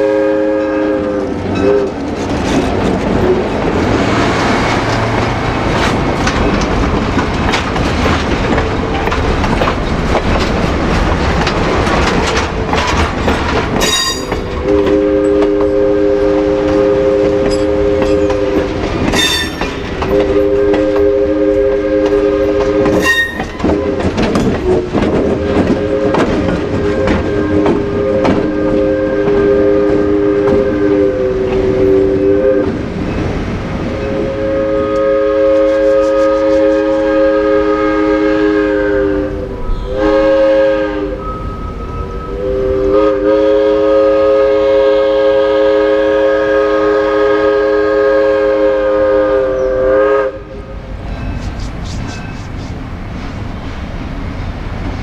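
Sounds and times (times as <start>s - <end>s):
locomotive horn blasts: 0.0s - 2.0s, 13.9s - 32.8s, 34.0s - 50.7s
train wheels clicking over rail joints: 1.1s - 32.0s, 50.9s - 55.0s.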